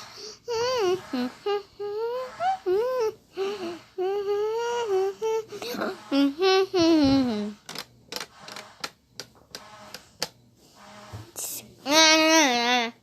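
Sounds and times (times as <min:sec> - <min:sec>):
young child whimpering: 0:00.0 - 0:07.6.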